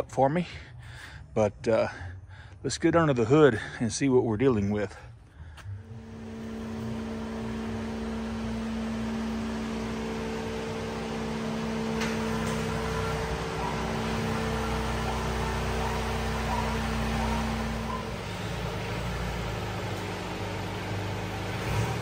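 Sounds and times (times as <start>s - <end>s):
steady machine hum: 4.9s - 22.0s.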